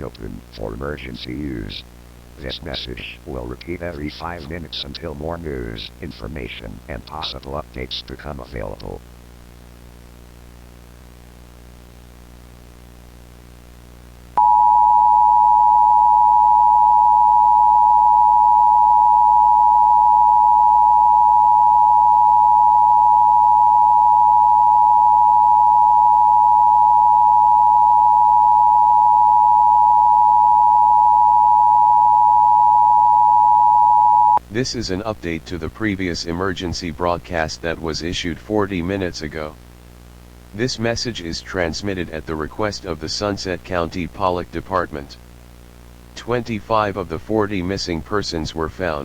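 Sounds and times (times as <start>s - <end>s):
faint steady hum: 0.0s - 49.0s
two-tone alarm: 14.4s - 34.4s.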